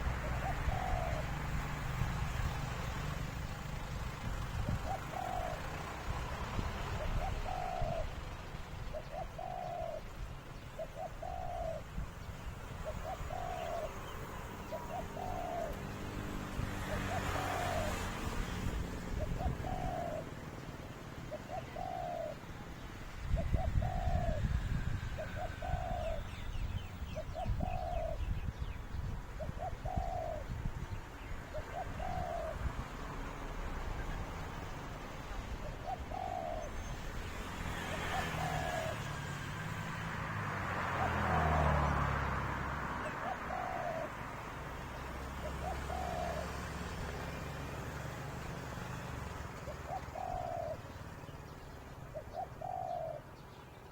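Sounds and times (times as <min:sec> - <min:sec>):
wind rumble on microphone: 0:00.0 - 0:20.8, 0:22.9 - 0:43.0
dove cooing: 0:00.0 - 0:39.8, 0:40.8 - 0:53.6.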